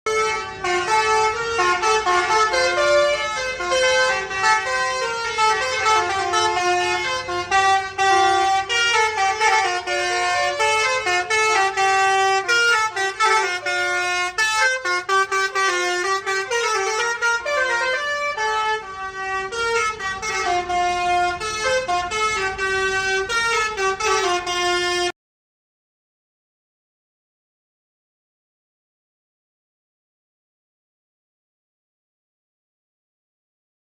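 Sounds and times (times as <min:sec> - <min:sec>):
bus horn playing a tune: 0:00.1 - 0:25.2.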